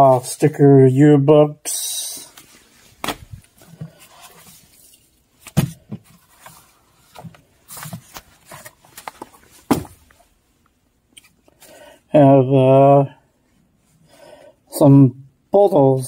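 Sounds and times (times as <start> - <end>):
paper rustle: 2.4 - 10.2
booklets knocking on a surface: 9.6 - 10.0.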